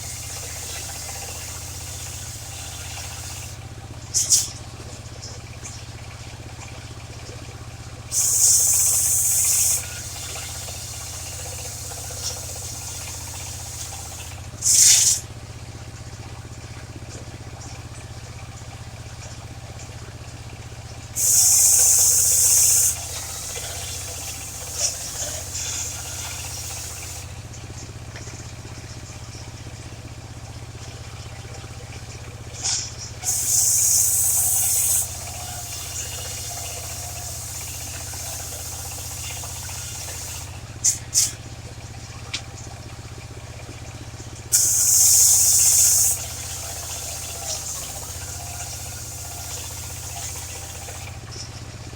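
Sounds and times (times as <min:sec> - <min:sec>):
sawmill engine humming: 0:00.0 - 0:51.9
loud high hiss: 0:08.1 - 0:15.2, 0:21.2 - 0:27.3, 0:33.2 - 0:41.4, 0:44.5 - 0:51.1.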